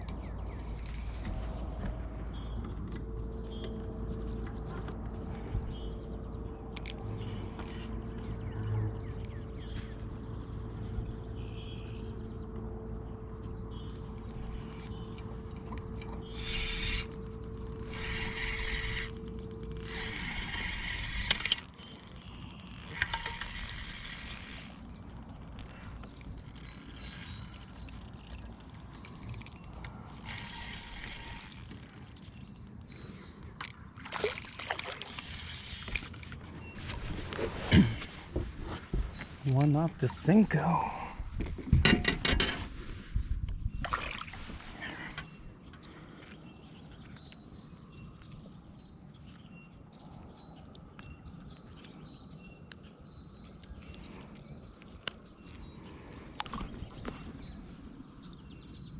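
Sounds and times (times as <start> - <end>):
small motor humming: 14.3 - 36.5.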